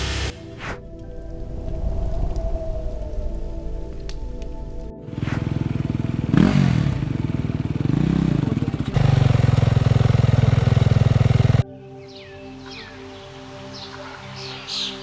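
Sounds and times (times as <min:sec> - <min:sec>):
engine revving: 0:05.1 - 0:11.6.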